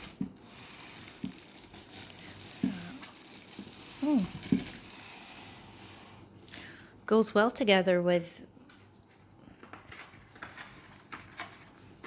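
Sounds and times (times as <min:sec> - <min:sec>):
packaging rustling and crinkling: 0:00.0 - 0:05.8.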